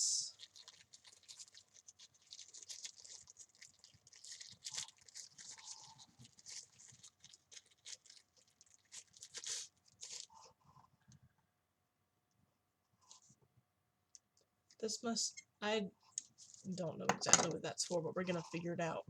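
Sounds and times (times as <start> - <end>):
plastic packaging crinkling: 0.2 - 10.5, 16.2 - 18.0.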